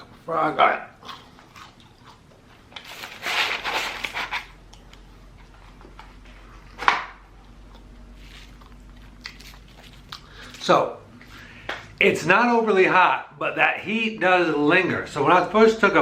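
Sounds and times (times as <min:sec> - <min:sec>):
quiet chewing: 0:00.9 - 0:02.9, 0:04.6 - 0:12.0
paper packaging rustling: 0:02.8 - 0:04.6.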